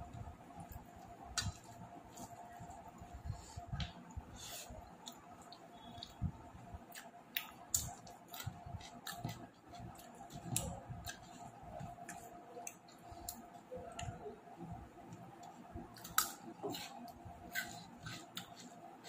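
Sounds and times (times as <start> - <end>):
faint steady hum: 0.0 - 19.0
chewing clicks and smacks: 6.9 - 11.2.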